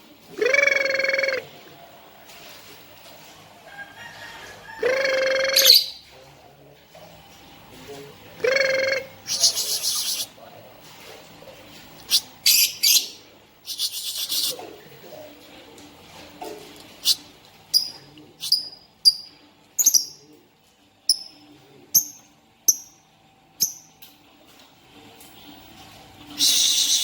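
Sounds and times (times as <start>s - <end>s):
lovebird chattering: 8.6s - 10.3s, 12.1s - 14.6s, 17.8s - 20.2s.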